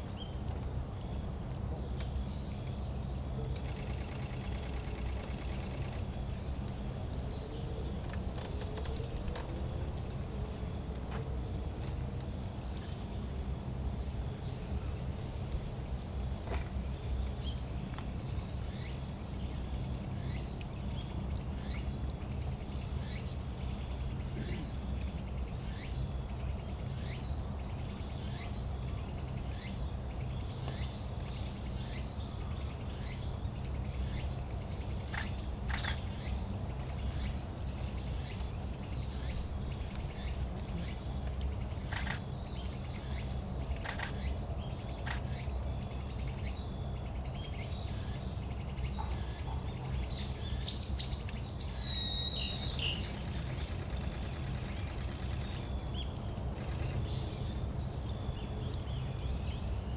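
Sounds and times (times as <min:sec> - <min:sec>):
insect trilling: 0:03.6 - 0:06.1, 0:51.0 - 0:57.6
small songbirds calling: 0:12.5 - 0:59.9
sharp clicks: 0:35.1 - 0:36.0, 0:41.9 - 0:42.2, 0:43.7 - 0:44.3.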